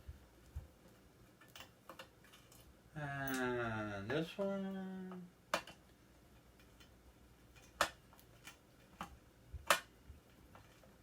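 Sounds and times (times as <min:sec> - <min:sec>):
tools and small parts clinking: 0:01.2 - 0:03.5, 0:05.5 - 0:11.0.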